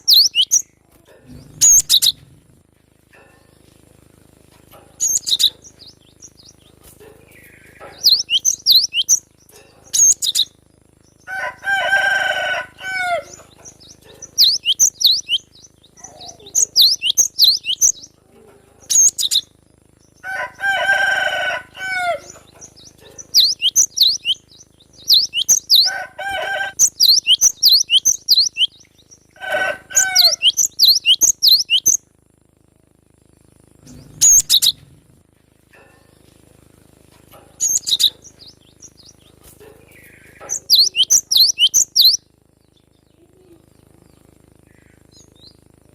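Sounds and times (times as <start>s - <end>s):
tits chirping rapidly: 0.0s - 0.8s, 1.4s - 2.2s, 4.9s - 18.2s, 18.8s - 32.0s, 33.8s - 34.9s, 37.5s - 43.1s
harsh bird calls: 0.0s - 2.4s, 5.0s - 32.0s, 33.8s - 35.1s, 37.6s - 45.6s.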